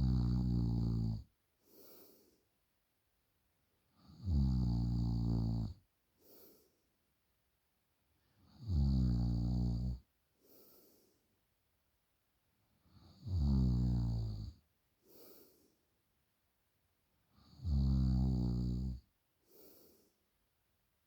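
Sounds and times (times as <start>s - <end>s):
person snoring: 0.0s - 2.3s, 4.1s - 6.6s, 8.6s - 10.9s, 13.1s - 14.5s, 17.5s - 20.1s.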